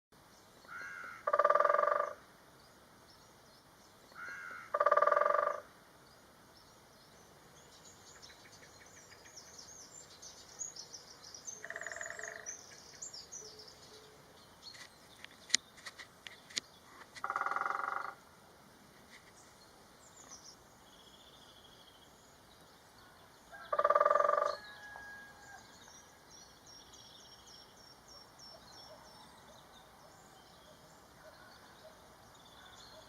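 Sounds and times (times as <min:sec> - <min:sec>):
small birds chirping: 0:02.6 - 0:17.6, 0:19.0 - 0:24.9
woodpecker drumming on wood: 0:23.7 - 0:24.5.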